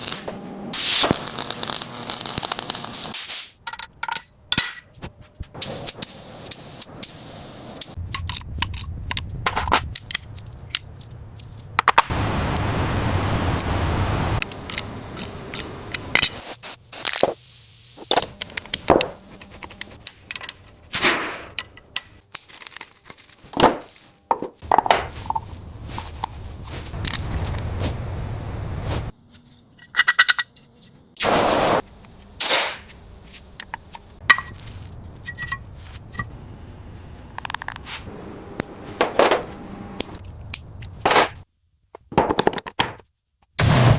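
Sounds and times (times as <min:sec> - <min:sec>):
loud hiss: 0:00.8 - 0:03.6, 0:05.6 - 0:08.0, 0:16.2 - 0:19.8, 0:31.1 - 0:35.1.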